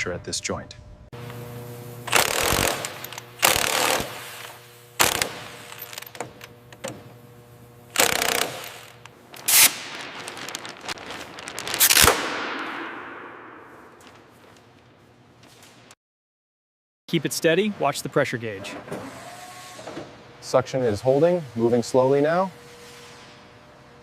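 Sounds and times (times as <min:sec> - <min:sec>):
bursts of mechanical noise: 0:02.0 - 0:06.5, 0:07.9 - 0:10.2.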